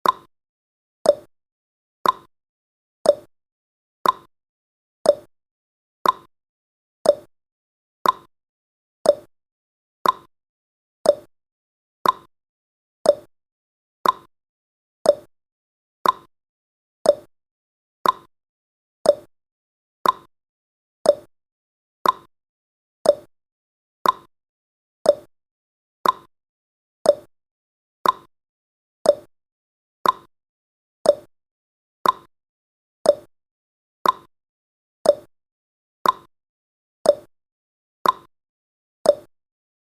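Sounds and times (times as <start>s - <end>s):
clock ticking: 2.0s - 2.3s, 4.0s - 4.3s, 6.0s - 6.3s, 8.0s - 8.3s, 10.0s - 10.3s, 12.0s - 12.3s, 14.0s - 14.3s, 16.0s - 16.3s, 18.0s - 18.3s, 20.0s - 20.3s, 21.1s - 21.3s, 22.0s - 22.3s, 24.0s - 24.3s, 26.0s - 26.3s, 28.0s - 28.3s, 29.1s - 29.3s, 30.0s - 30.3s, 31.1s - 31.3s, 32.0s - 32.3s, 33.1s - 33.3s, 34.0s - 34.3s, 35.1s - 35.3s, 36.0s - 36.3s, 38.0s - 38.3s.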